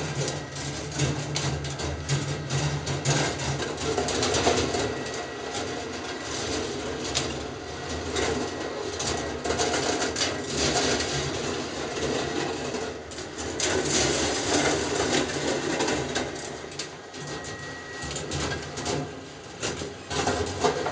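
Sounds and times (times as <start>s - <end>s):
balls rolling on metal track: 0.0s - 20.9s
small clicks and clacks: 0.0s - 20.9s.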